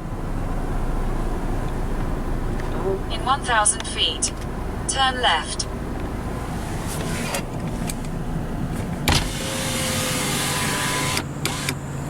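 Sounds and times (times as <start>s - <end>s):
car interior rumble: 0.0s - 12.0s
power window motor: 6.4s - 12.0s.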